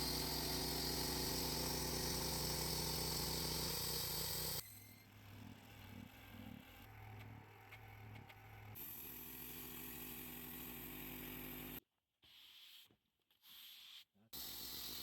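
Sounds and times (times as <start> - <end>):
sawmill engine running: 0.0 - 4.6.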